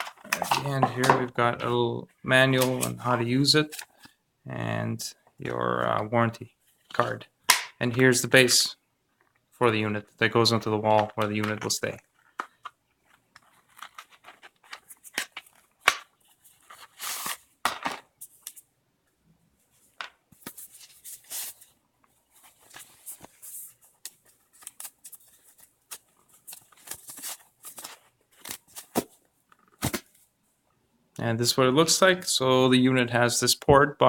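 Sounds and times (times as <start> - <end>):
plastic parts clicking and knocking: 10.9 - 16.2
packaging rustling and tearing: 13.4 - 17.5, 22.4 - 30.1.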